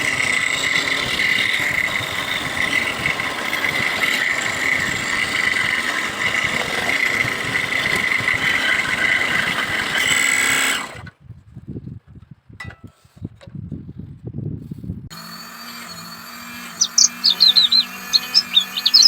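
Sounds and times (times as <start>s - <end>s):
power tool cutting bamboo: 0.0s - 11.1s, 15.1s - 19.0s.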